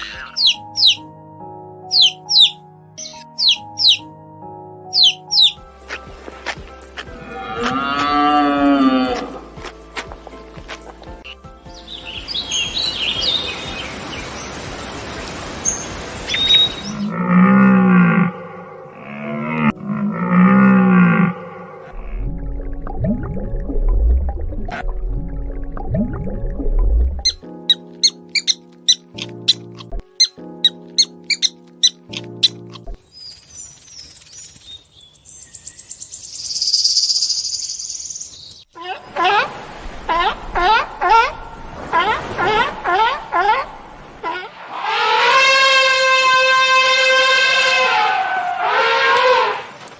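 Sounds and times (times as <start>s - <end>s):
birds chirping: 0.0s - 1.1s, 1.9s - 4.1s, 4.9s - 5.8s, 11.1s - 17.2s, 27.3s - 39.2s.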